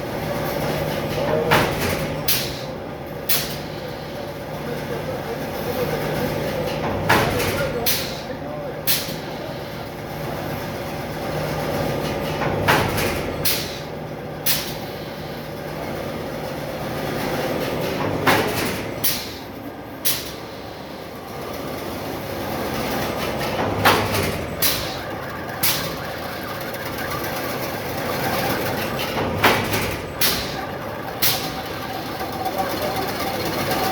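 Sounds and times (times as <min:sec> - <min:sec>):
metallic machine clacks: 0:22.8 - 0:33.9.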